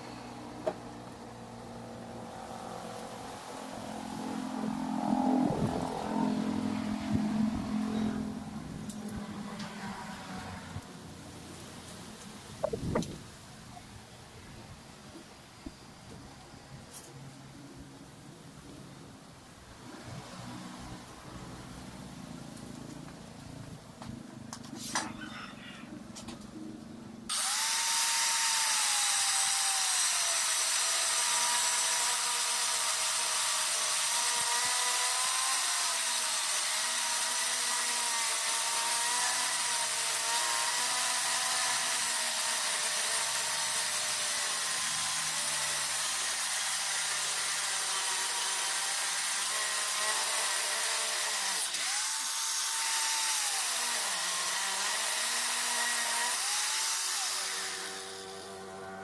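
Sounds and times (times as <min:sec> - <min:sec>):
angle grinder grinding steel: 0:00.0 - 0:10.8, 0:27.3 - 0:59.0.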